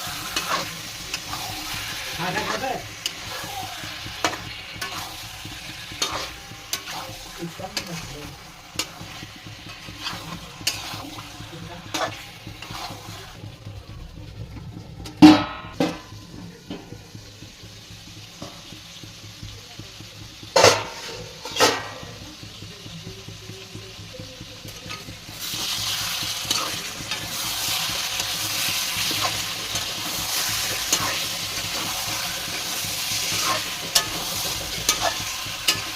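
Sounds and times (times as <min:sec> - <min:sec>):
metal spatula scraping pan: 0:00.0 - 0:13.4, 0:20.6 - 0:22.1, 0:24.9 - 0:35.9
curry sizzling in a pan: 0:00.0 - 0:35.9
metal clank on pan: 0:15.2 - 0:16.1, 0:20.5 - 0:22.2.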